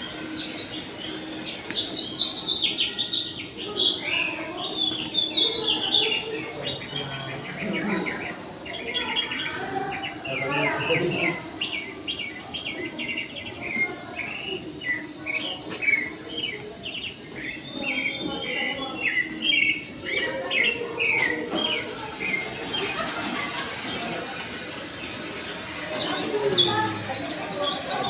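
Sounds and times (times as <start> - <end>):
many birds chirping: 0.0 - 28.0.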